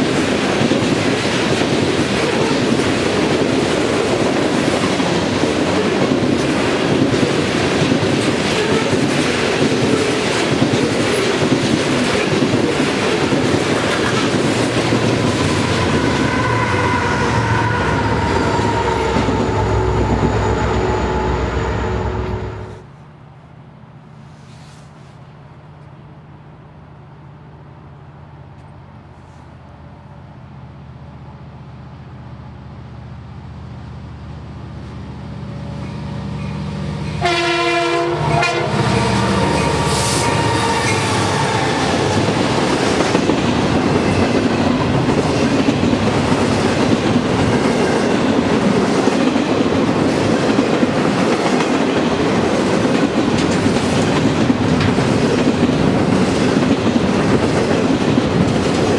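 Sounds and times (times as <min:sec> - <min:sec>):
train wheels on rails clacking: 0:00.0 - 0:16.5, 0:35.8 - 0:58.9
diesel locomotive engine rumble: 0:00.0 - 0:58.9
train horn blast: 0:15.1 - 0:22.9, 0:37.1 - 0:42.4.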